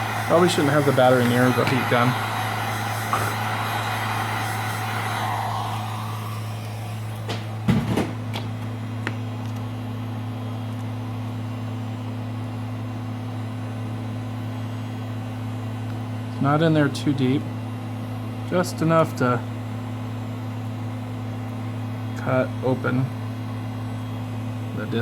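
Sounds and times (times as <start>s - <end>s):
heat gun blowing air: 0.0s - 7.6s.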